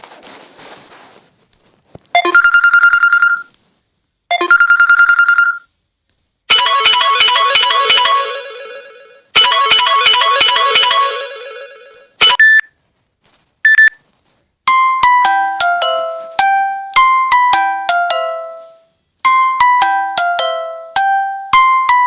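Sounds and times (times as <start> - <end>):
phone ringtone melody: 2.2 - 3.5, 4.3 - 5.6, 6.5 - 12.4, 15.0 - 22.0
short double beeps: 13.7 - 14.0.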